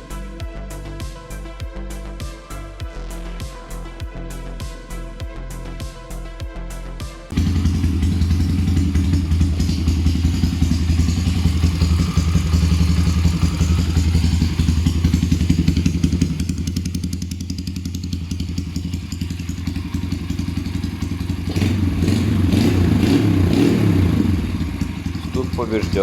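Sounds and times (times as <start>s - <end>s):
small motorbike engine running: 7.3s - 26.0s.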